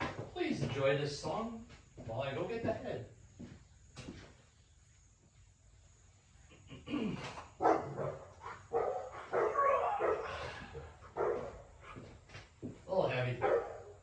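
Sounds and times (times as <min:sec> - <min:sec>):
dogs barking: 0:07.6 - 0:12.1, 0:13.4 - 0:14.0.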